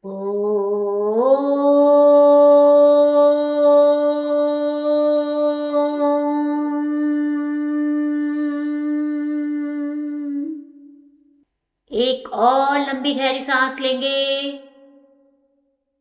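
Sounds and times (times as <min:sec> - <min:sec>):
woman chanting om: 0:00.0 - 0:11.1, 0:11.9 - 0:15.2.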